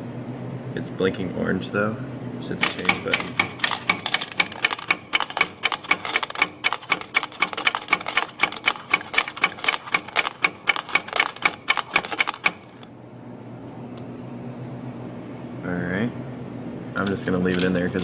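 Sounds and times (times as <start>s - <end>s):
vending machine button clicking: 2.6s - 12.7s.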